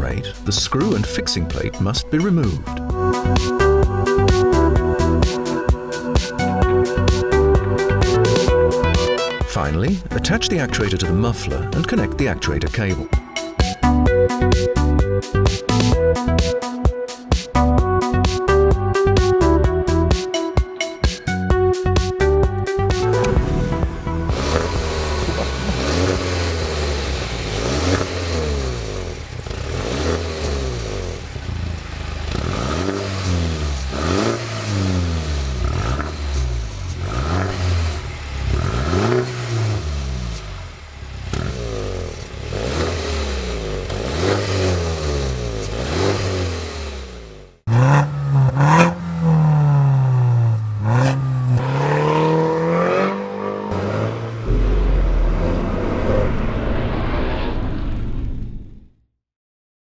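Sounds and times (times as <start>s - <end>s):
car engine revving: 0.0s - 14.0s, 22.0s - 58.8s
exhaust pops and crackles: 22.9s - 46.3s.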